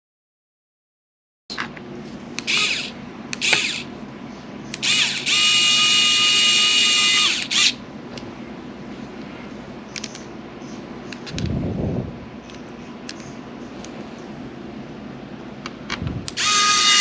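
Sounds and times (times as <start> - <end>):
electric screwdriver whirring: 2.4 - 3.9, 4.8 - 7.8, 16.3 - 17.0.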